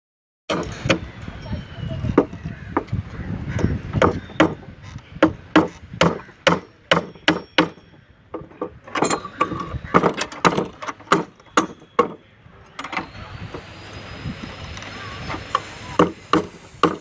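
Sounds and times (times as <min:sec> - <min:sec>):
metal bar knocks and clanks: 0:00.5 - 0:01.1, 0:03.6 - 0:13.1.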